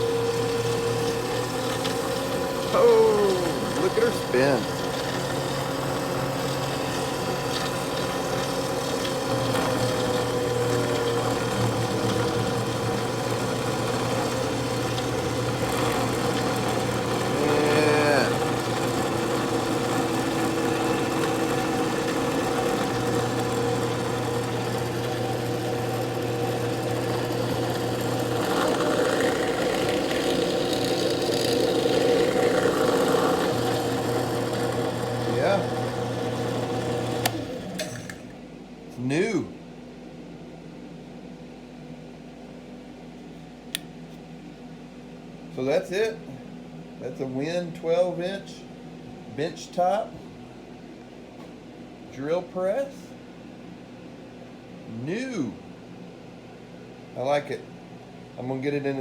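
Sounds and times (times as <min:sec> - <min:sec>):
drill press motor humming: 0:00.0 - 0:38.4.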